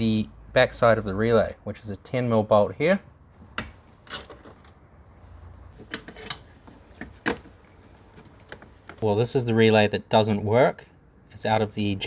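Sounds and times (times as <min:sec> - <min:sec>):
hand tool clicking on metal parts: 0:03.4 - 0:04.7
faint handling noise: 0:03.4 - 0:09.0.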